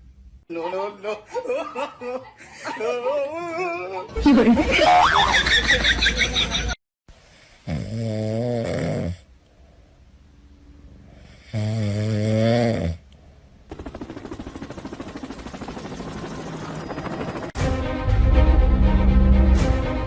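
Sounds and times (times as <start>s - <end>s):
pet snoring: 7.6s - 9.3s, 11.2s - 13.0s
music: 17.6s - 20.0s.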